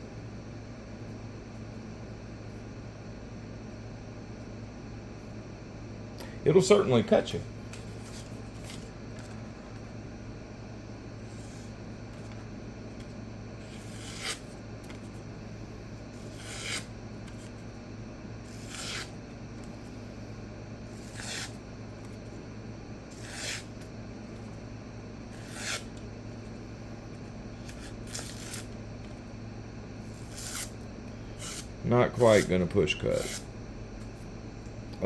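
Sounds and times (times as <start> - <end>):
knife slicing paper: 13.6 - 14.5, 16.2 - 17.5, 18.4 - 19.1, 20.9 - 21.6, 23.1 - 23.8, 25.3 - 26.0, 27.6 - 28.7, 30.1 - 30.8, 31.4 - 32.5.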